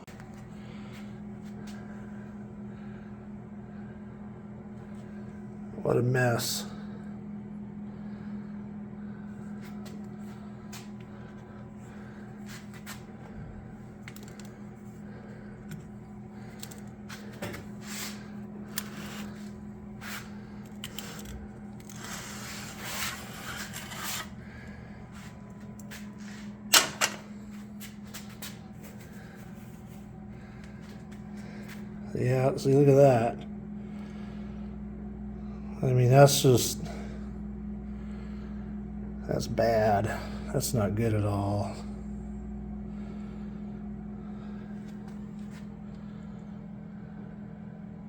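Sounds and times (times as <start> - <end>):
steady low hum: 0.0 - 48.0
metal scraping: 20.9 - 24.4.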